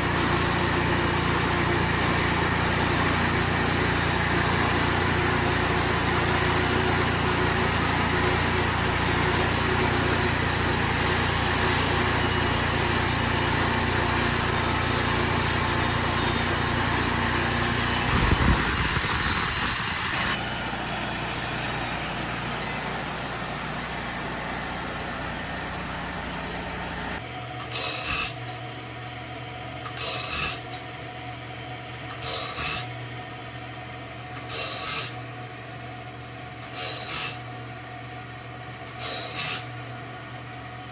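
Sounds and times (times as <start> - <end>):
sawmill saw cutting log: 0.0 - 28.5, 30.0 - 30.7, 32.1 - 32.9, 34.4 - 35.2, 36.6 - 37.5, 38.9 - 39.8.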